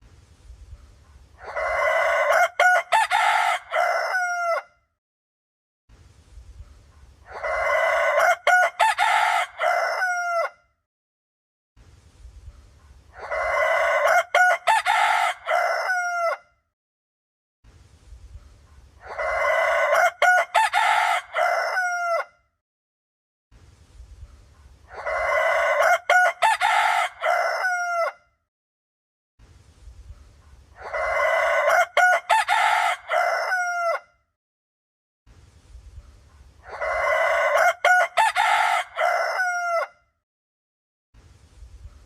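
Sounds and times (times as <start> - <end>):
rooster crowing: 1.4 - 4.8, 7.2 - 10.7, 13.1 - 16.6, 19.0 - 22.5, 24.9 - 28.3, 30.8 - 34.2, 36.6 - 40.1.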